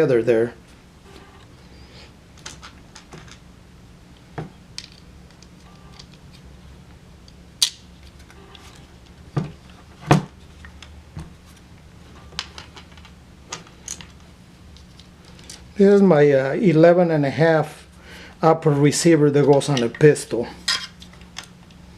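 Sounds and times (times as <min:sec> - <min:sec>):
small metal parts clinking: 0:12.4 - 0:15.6.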